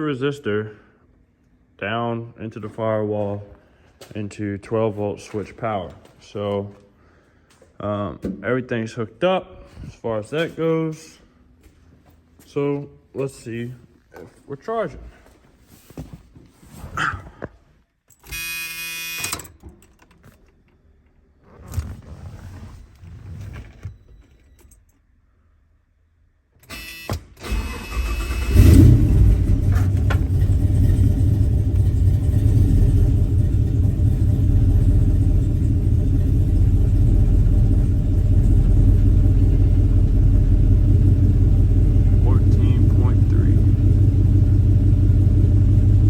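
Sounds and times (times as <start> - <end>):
short buzzing tone: 18.2 - 19.6, 26.7 - 27.3
engine cranking and idling: 27.4 - 46.0.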